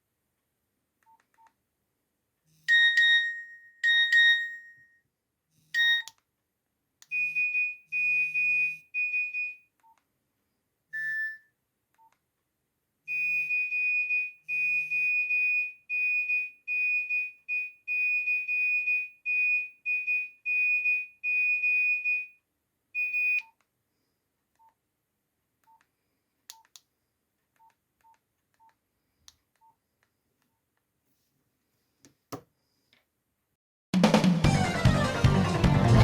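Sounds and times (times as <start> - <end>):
phone ringtone beeps: 2.7 - 5.0, 5.8 - 6.1, 11.0 - 11.5.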